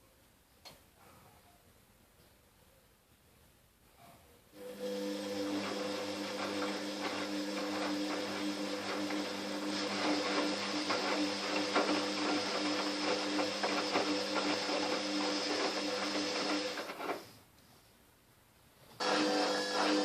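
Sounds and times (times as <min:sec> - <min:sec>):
washing machine motor hum: 0:04.6 - 0:17.3, 0:19.0 - 0:20.0.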